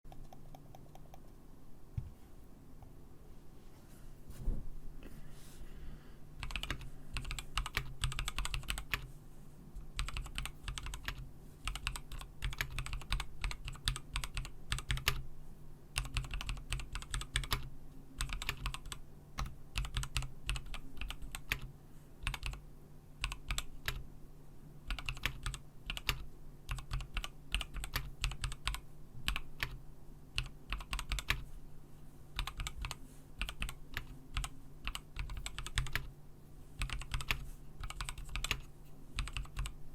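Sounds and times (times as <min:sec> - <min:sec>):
mechanical keyboard typing: 0:06.4 - 0:09.1, 0:09.9 - 0:15.2, 0:16.0 - 0:22.6, 0:23.2 - 0:24.0, 0:24.8 - 0:31.5, 0:32.4 - 0:36.1, 0:36.8 - 0:39.8.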